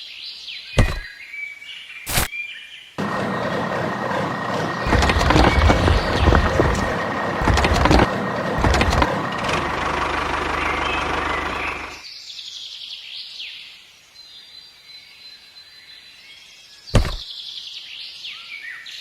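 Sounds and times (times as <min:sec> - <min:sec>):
mechanical clattering and knocks: 0:03.0 - 0:12.0.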